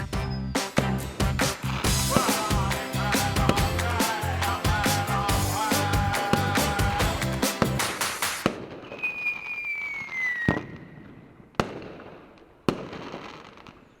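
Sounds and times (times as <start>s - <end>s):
music: 0.0s - 8.4s
firework whistling: 0.0s - 11.2s
firework bangs: 0.6s - 13.9s.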